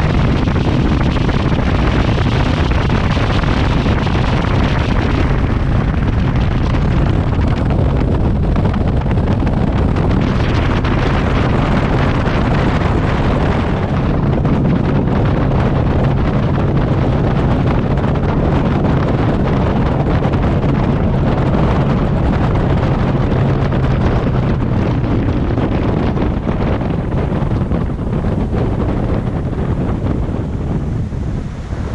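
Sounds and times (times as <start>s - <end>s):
boat engine hum: 0.0s - 31.9s
wind buffeting microphone: 0.0s - 31.9s
water rushing past hull: 23.6s - 31.9s.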